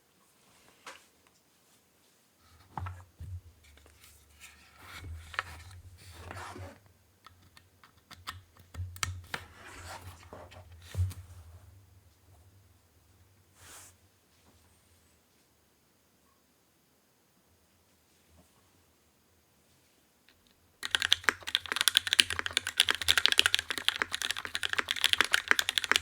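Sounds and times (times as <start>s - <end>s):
mechanical keyboard typing: 20.8s - 26.0s.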